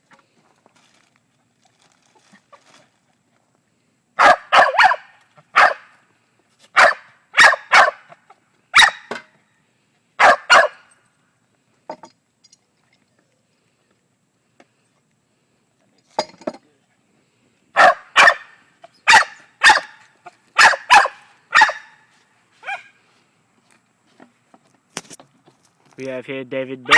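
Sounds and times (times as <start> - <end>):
small dog barking: 4.2 - 5.9, 6.8 - 8.1, 8.8 - 9.1, 10.2 - 10.8, 17.8 - 18.5, 19.1 - 20.0, 20.6 - 22.0.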